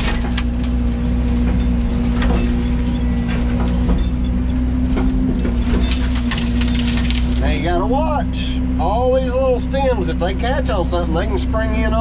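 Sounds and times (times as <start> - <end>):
excavator diesel engine running: 0.0 - 12.0
tree stem cracking: 6.0 - 7.5.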